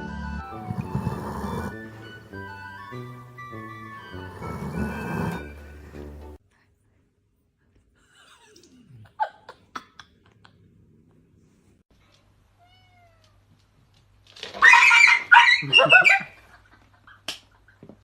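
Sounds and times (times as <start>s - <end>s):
cat meowing: 4.3s - 5.5s, 12.6s - 13.4s.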